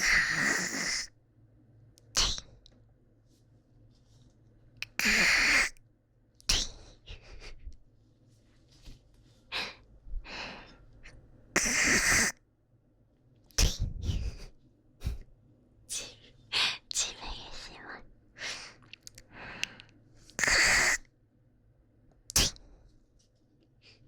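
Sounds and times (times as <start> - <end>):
person hawking up phlegm: 0.0 - 1.1, 4.8 - 5.8, 11.6 - 12.3, 20.4 - 21.0
person spitting: 0.0 - 1.1, 2.2 - 2.5, 4.8 - 5.8, 6.5 - 6.8, 11.6 - 12.4, 20.4 - 21.0, 22.3 - 22.6.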